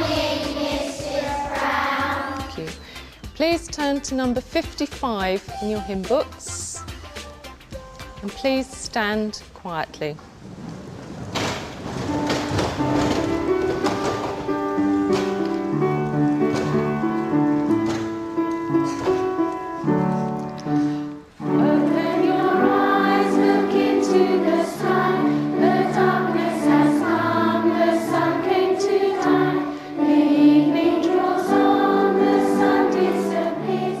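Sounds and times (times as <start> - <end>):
children singing a hymn: 0.0 - 2.6, 21.4 - 34.0
instrumental accompaniment: 0.0 - 9.8, 11.9 - 34.0.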